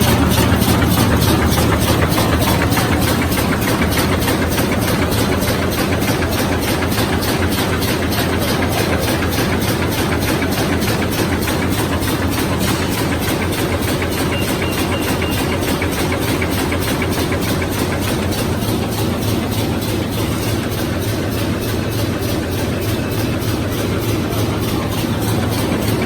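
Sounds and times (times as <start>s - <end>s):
bag making machine clattering: 0.0s - 26.0s.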